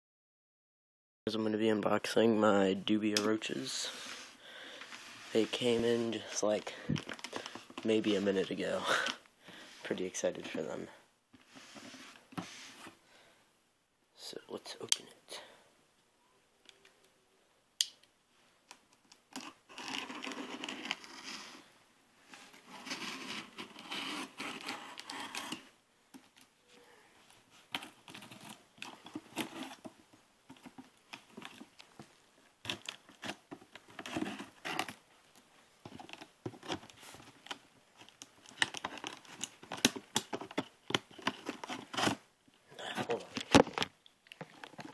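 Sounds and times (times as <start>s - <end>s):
packaging rustling: 5.6s - 9.2s, 19.1s - 21.7s, 27.5s - 42.2s
packaging tearing and crinkling: 19.3s - 21.1s.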